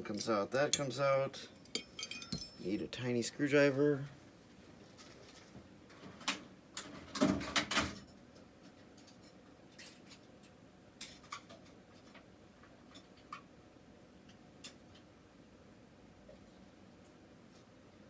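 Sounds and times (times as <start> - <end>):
metal tools clattering on bench: 0.0 - 1.0, 1.6 - 2.9.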